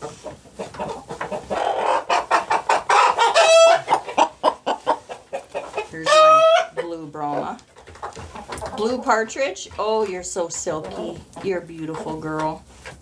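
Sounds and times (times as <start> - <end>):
chickens clucking: 0.0 - 13.0
chicken squawk: 0.7 - 6.8.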